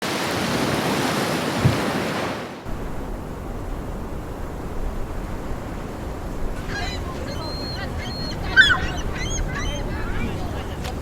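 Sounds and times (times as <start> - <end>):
waves breaking on beach: 0.0 - 11.0
low wind rumble: 2.7 - 11.0.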